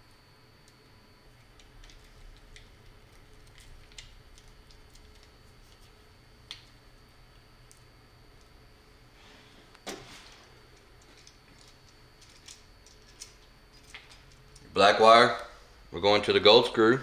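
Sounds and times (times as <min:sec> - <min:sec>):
small parts clicking and tapping: 0:01.4 - 0:05.8, 0:10.8 - 0:14.7.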